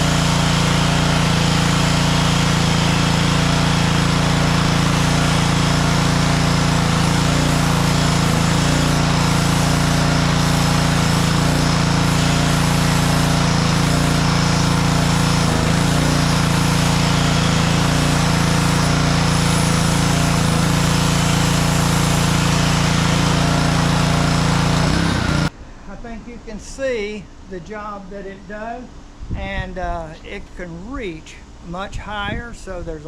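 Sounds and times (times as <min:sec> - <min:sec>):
high-pressure water spray hiss: 0:00.0 - 0:25.5
pressure washer motor drone: 0:00.0 - 0:25.5.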